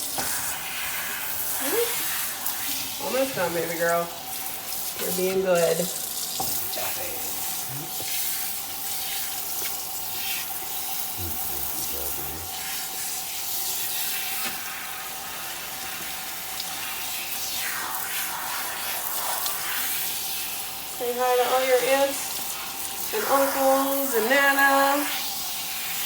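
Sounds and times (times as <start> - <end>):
bath sprayer water hissing: 0.0 - 26.0.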